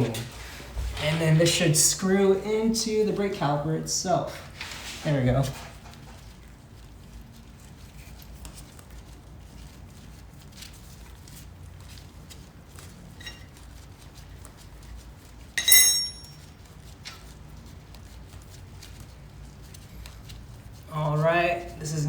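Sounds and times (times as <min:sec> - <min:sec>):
sharp metallic clink: 0:15.6 - 0:16.4.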